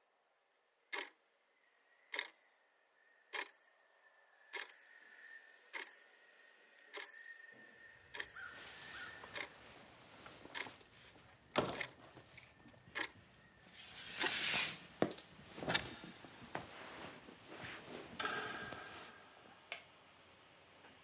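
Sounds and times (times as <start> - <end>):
knocks and clicks: 11.5 - 13.2
rustling swish: 13.7 - 18.2.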